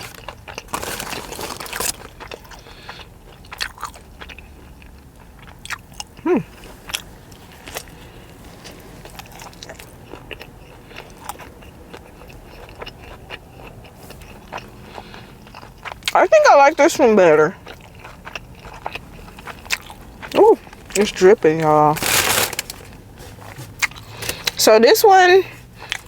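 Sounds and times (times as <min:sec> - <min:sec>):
loud crunchy bite: 0:00.0 - 0:04.3, 0:21.9 - 0:24.6
person crunching and chewing food: 0:00.0 - 0:24.7, 0:25.4 - 0:26.0.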